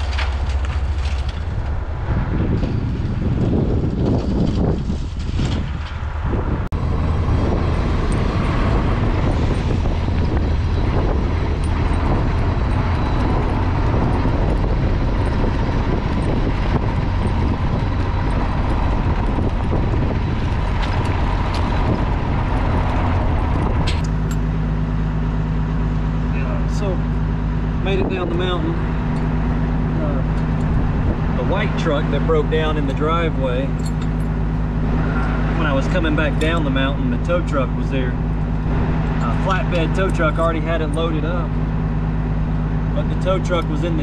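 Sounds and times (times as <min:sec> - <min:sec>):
vehicle engine running: 0:00.0 - 0:44.0.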